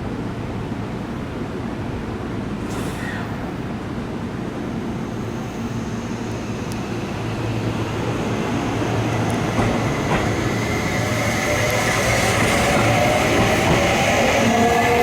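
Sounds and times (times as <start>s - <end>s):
electric train rumble: 0.2s - 15.0s
train whining tones: 4.8s - 15.0s.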